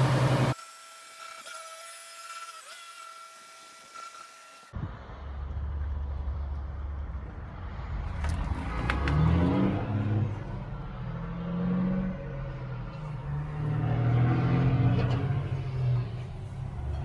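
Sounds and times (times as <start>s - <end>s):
tractor diesel engine revving: 0.0s - 0.6s, 7.9s - 17.0s.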